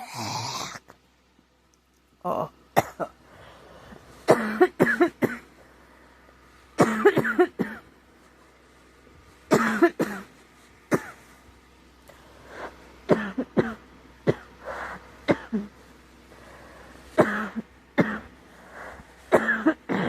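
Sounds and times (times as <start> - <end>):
girl coughing: 2.8 - 3.2, 4.3 - 5.5, 6.8 - 7.8, 9.5 - 10.3, 10.9 - 11.2, 13.1 - 14.5, 15.3 - 15.7, 19.3 - 20.0.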